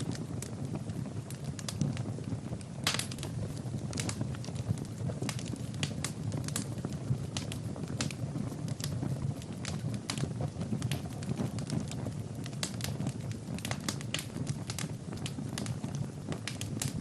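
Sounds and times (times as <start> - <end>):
fire crackling and popping: 0.0 - 17.0
low rumble of flames: 0.0 - 17.0.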